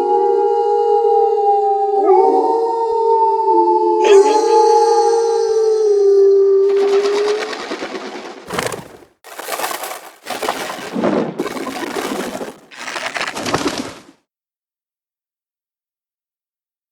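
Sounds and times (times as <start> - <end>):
crunching crackling noise bursts: 8.5 - 14.0.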